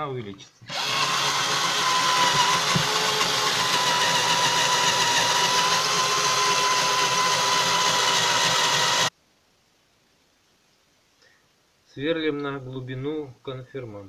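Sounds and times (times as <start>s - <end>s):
cordless drill running: 0.7s - 9.1s.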